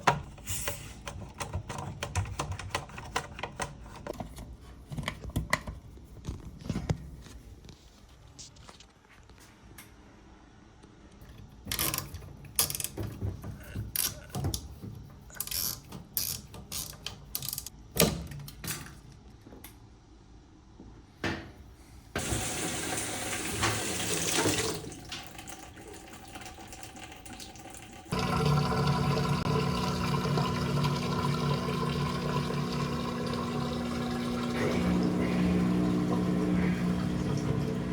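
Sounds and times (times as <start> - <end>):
water rushing into tub: 22.2 - 37.9.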